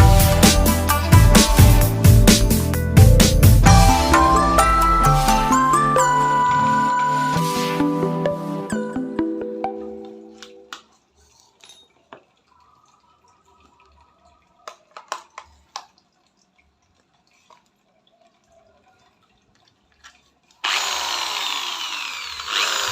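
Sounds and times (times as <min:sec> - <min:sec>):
power tool running loudly: 0:20.6 - 0:22.9.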